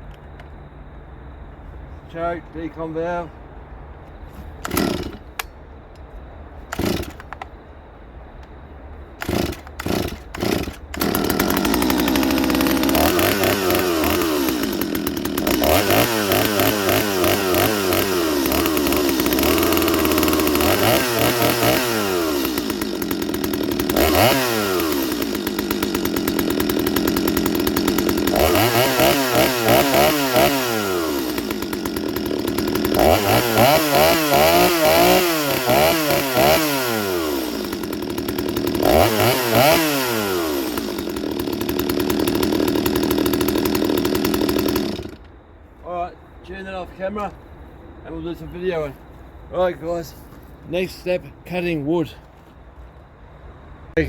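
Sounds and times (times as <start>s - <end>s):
chainsaw engine revving: 4.6s - 5.5s, 6.7s - 7.4s, 9.2s - 45.3s
starter cord yanks: 4.6s - 5.5s.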